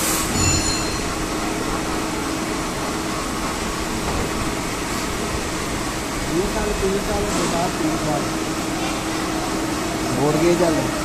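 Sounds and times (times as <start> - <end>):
machinery whirring: 0.0 - 11.0.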